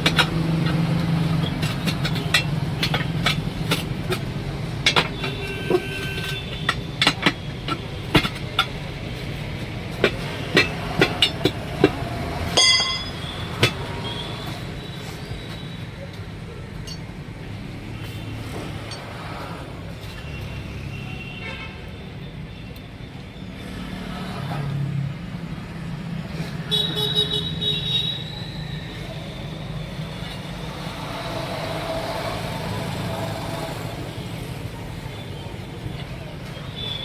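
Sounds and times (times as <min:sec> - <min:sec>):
metal tools knocking on wheel rim: 0:00.0 - 0:19.2
traffic hum: 0:00.0 - 0:37.0
vehicle horn: 0:05.2 - 0:06.6, 0:26.7 - 0:28.2.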